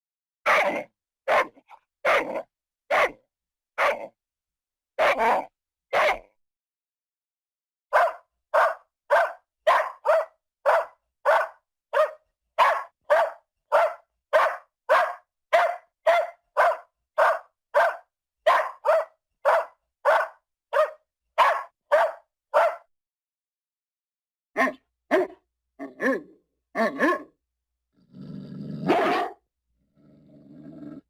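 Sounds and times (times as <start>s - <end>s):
dog barking: 0.4s - 4.2s, 5.0s - 6.4s, 7.9s - 22.9s, 24.6s - 27.4s, 28.8s - 29.4s.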